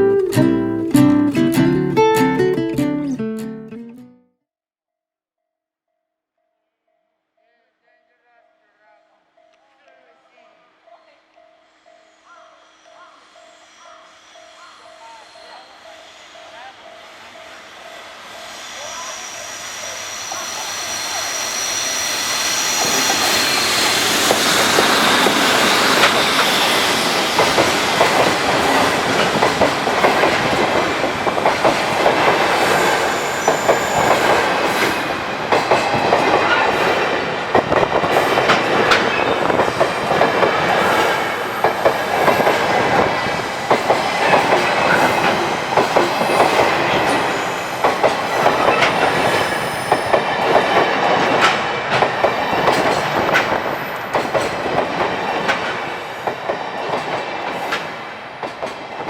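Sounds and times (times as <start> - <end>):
train wheels clattering over rail joints: 22.7 - 59.0.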